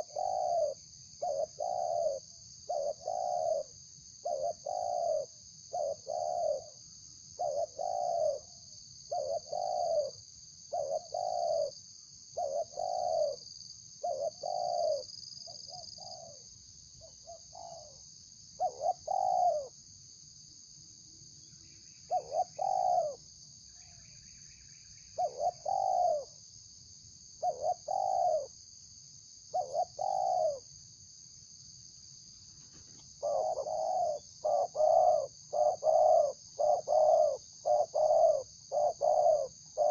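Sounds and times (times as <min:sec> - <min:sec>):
dove cooing: 0:00.0 - 0:06.8, 0:07.4 - 0:08.5, 0:09.1 - 0:11.8, 0:12.4 - 0:16.4, 0:17.0 - 0:18.0, 0:18.6 - 0:19.7, 0:22.1 - 0:23.2, 0:25.2 - 0:26.4, 0:27.4 - 0:28.6, 0:29.5 - 0:30.7, 0:32.7 - 0:39.9.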